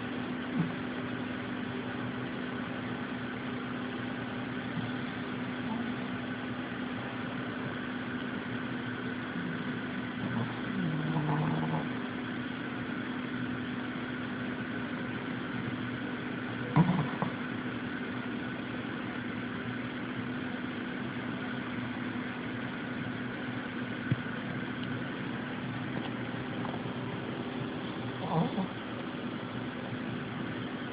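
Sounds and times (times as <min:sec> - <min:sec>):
pet snoring: 0:00.5 - 0:00.8, 0:04.7 - 0:06.3, 0:09.1 - 0:12.1, 0:16.6 - 0:17.5, 0:25.9 - 0:29.0.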